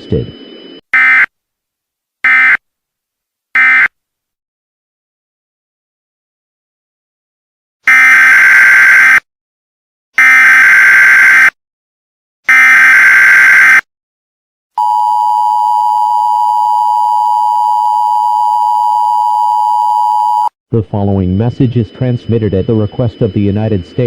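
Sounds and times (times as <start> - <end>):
data tone bursts: 20.0 - 24.0.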